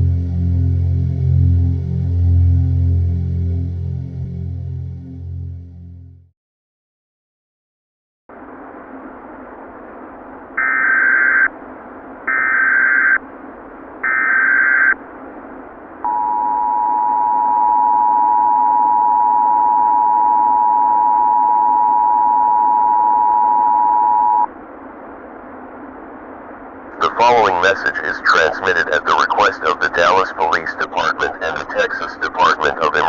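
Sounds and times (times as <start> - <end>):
two-tone attention signal: 16.1 - 24.5
radio hiss: 26.9 - 33.0.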